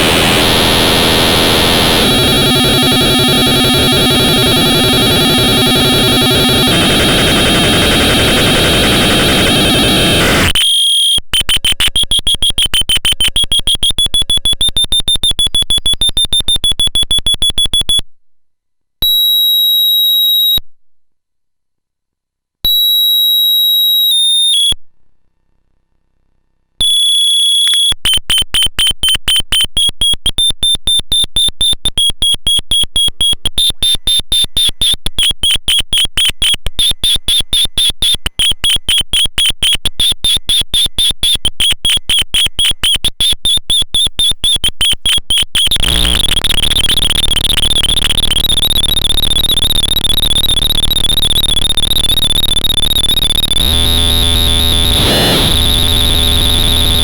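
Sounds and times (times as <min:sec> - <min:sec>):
harsh buzzing drone: 0:00.0 - 0:10.5, 0:45.7 - 0:57.0
piercing electronic tone: 0:00.0 - 0:10.6, 0:33.2 - 0:57.0
pulsing electronic chirp: 0:00.0 - 0:10.6, 0:32.2 - 0:57.0.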